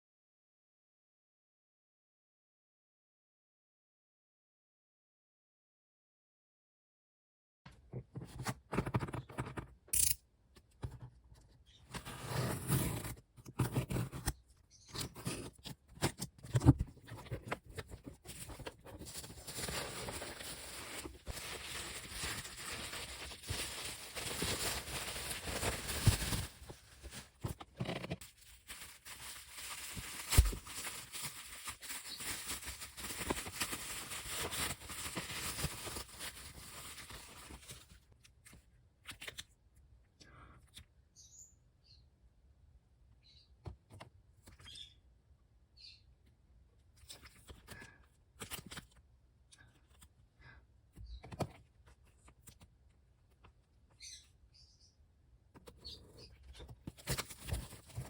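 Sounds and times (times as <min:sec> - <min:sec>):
plastic and paper crinkling: 0:15.0 - 0:38.2, 0:56.7 - 0:58.0.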